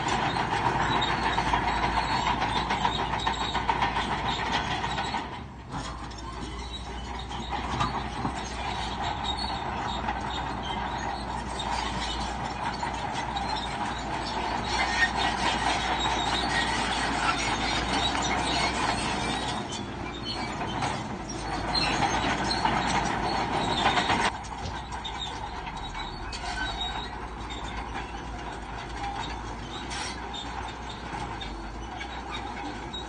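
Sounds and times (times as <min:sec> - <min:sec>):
bulldozer clanking and grinding: 0:00.0 - 0:33.0.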